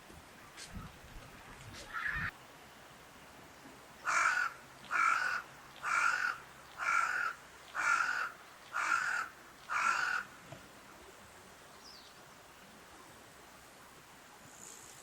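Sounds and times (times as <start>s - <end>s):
crow cawing: 4.1s - 10.3s.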